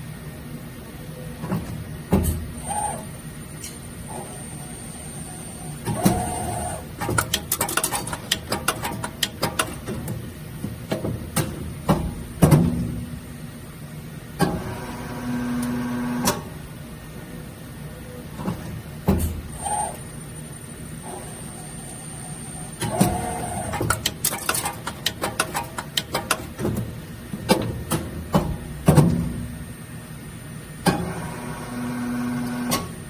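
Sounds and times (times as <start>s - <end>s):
machine hum: 0.0s - 33.0s
machine clicks and clacks: 5.8s - 10.2s, 22.8s - 29.2s.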